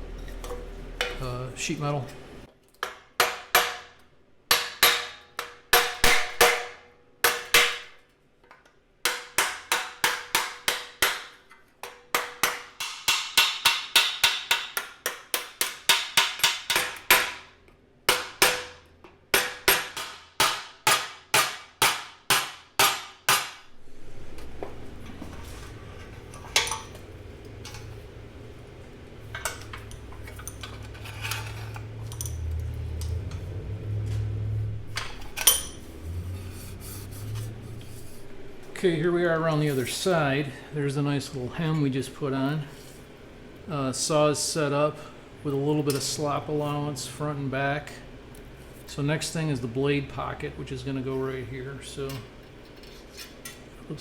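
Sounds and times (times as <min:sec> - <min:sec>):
low steady hum: 0:00.0 - 0:02.5, 0:23.4 - 0:54.0
hammer striking wood on sheet metal: 0:02.8 - 0:08.0, 0:09.0 - 0:17.5, 0:18.1 - 0:23.7.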